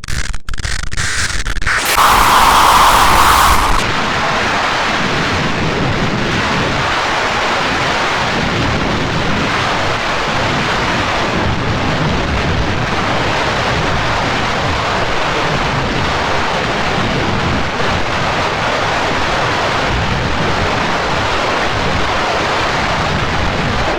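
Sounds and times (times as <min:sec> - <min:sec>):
loud rushing roar: 0:01.8 - 0:04.3.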